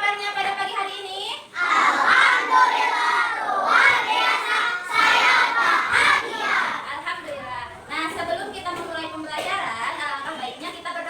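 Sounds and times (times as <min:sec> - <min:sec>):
children singing in unison: 0:01.6 - 0:06.9.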